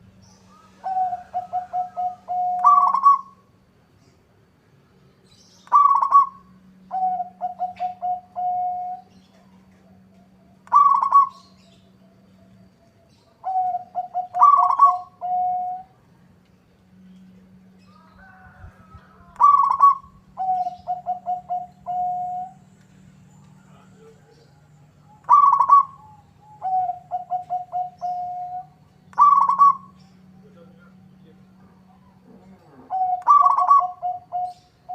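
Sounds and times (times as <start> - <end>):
dove singing staccato coos: 0.2 - 3.5, 5.4 - 15.9, 17.8 - 22.8, 24.0 - 30.4, 32.8 - 34.9.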